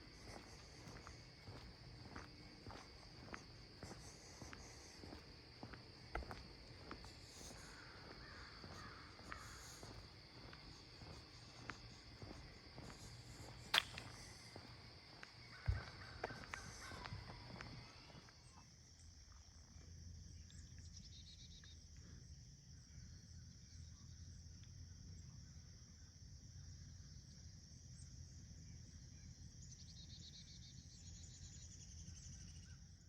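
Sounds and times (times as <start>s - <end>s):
high-pitched insect trilling: 0.0s - 18.3s
pulsed insect call: 0.0s - 33.0s.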